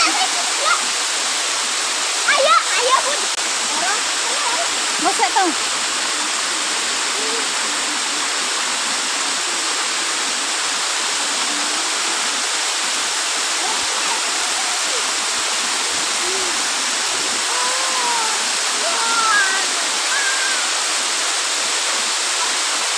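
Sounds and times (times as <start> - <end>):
waterfall rushing: 0.0 - 22.9.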